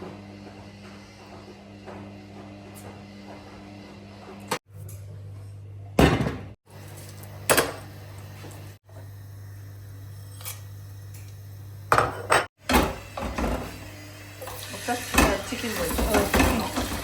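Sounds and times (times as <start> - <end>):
dishes and utensils clattering: 11.9 - 13.7, 15.1 - 17.0.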